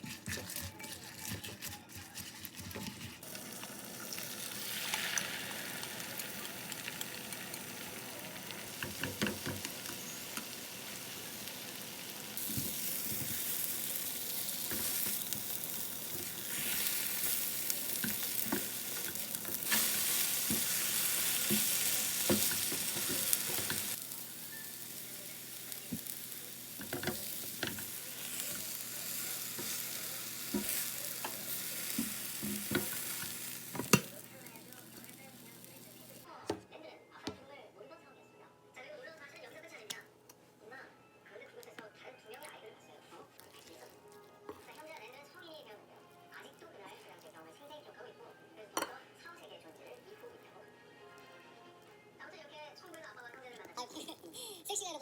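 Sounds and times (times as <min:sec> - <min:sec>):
utensil scraping a pan: 0:00.0 - 0:03.2
food sizzling in a frying pan: 0:03.2 - 0:36.3.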